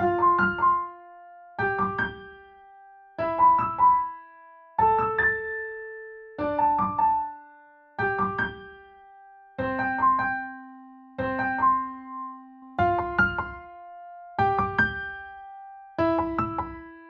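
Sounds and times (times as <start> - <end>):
electric piano phrases: 0.0 - 2.5, 9.6 - 17.0.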